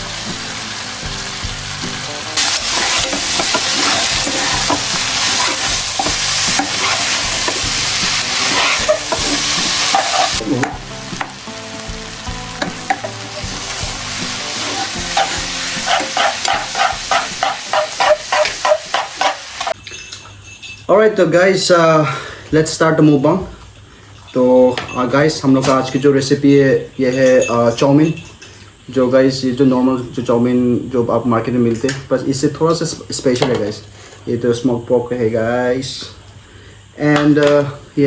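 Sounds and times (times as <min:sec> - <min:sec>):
food sizzling in a pan: 0:00.0 - 0:19.8
spatula scraping and knocking pan: 0:02.4 - 0:11.4, 0:14.4 - 0:19.8.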